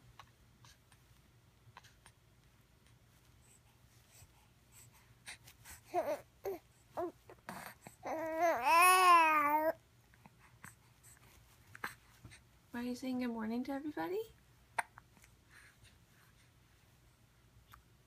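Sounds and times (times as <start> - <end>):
baby cooing: 5.9 - 9.8.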